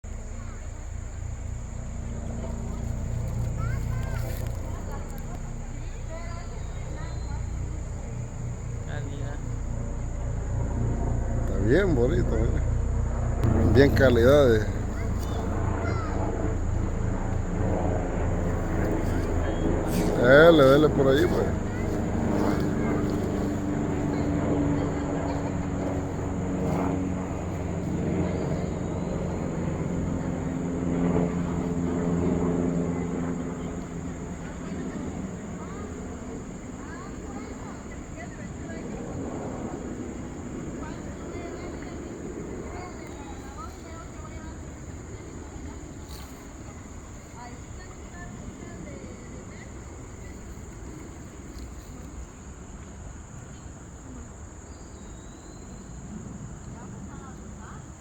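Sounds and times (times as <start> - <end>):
motor engine running: 0.0 - 38.4
low background rumble: 0.0 - 46.0
insects droning: 0.0 - 58.0.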